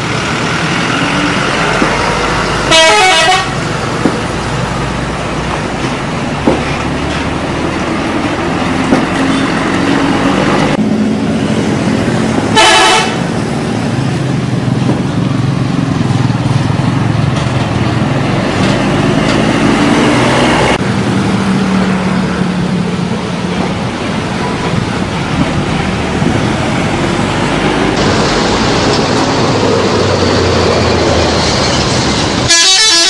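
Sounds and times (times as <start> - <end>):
road traffic: 0.0 - 33.0
bus horn blast: 2.7 - 3.6, 12.5 - 13.3, 32.4 - 33.0.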